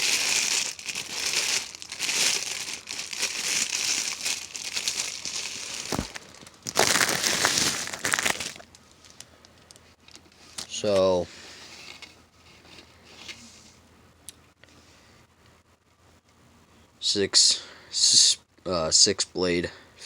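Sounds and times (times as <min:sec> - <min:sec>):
packaging crinkling and rustling: 0:00.0 - 0:09.8.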